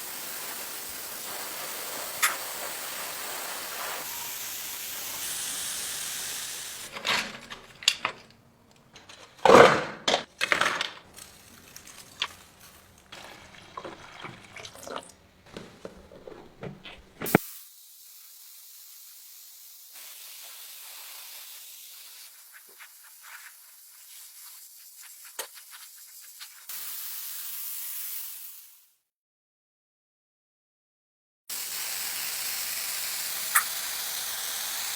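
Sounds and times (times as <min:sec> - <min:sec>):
paint spray hissing: 0:00.0 - 0:06.9, 0:17.2 - 0:28.9, 0:31.5 - 0:34.9
small parts clattering: 0:06.8 - 0:14.1.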